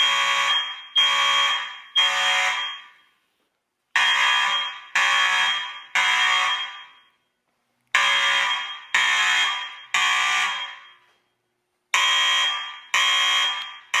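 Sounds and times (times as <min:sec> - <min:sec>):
fire alarm ringing tones: 0:00.0 - 0:03.2, 0:04.0 - 0:07.3, 0:08.0 - 0:11.2.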